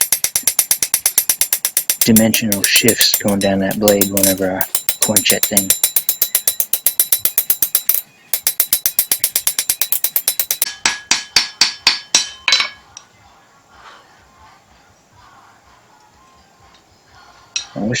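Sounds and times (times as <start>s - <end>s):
hammer striking blade on anvil: 0.0s - 12.8s.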